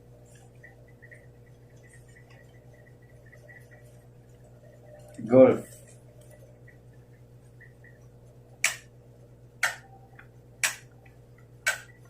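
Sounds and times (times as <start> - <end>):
switch clicks: 8.6 - 8.9, 9.6 - 11.0, 11.6 - 12.0.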